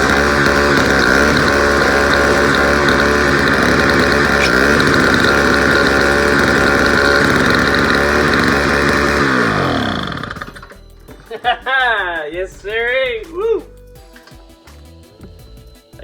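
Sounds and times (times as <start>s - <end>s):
snowblower engine running: 0.0s - 11.0s.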